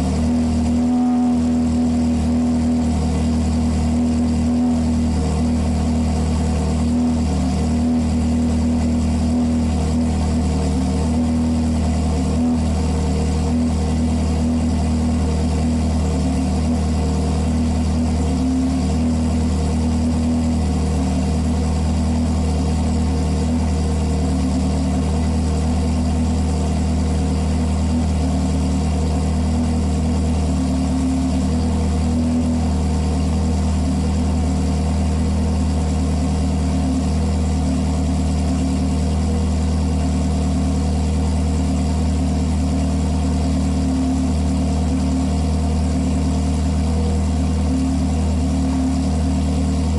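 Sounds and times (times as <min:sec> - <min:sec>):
car engine idling: 0:00.0 - 0:49.9.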